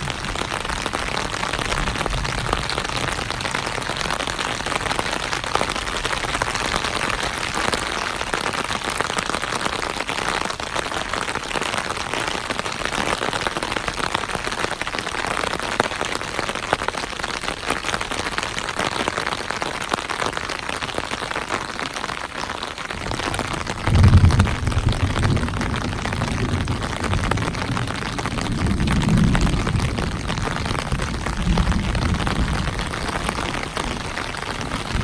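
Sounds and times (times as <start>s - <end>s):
raindrops pattering on hard surfaces: 0.0s - 35.0s
heavy rain hissing: 18.0s - 35.0s.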